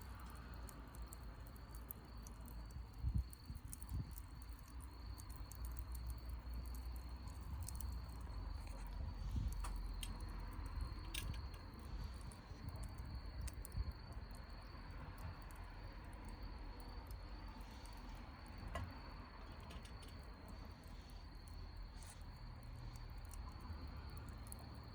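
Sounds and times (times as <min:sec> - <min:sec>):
campfire crackling and popping: 0:00.0 - 0:24.9
crickets trilling: 0:00.0 - 0:24.9.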